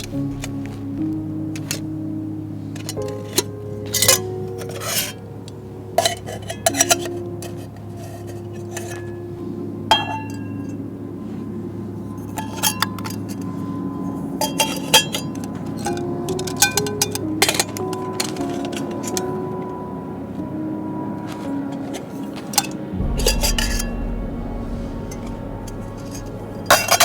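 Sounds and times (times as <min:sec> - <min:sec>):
background music: 0:00.0 - 0:27.0
metal pots and lids clinking: 0:06.0 - 0:09.0.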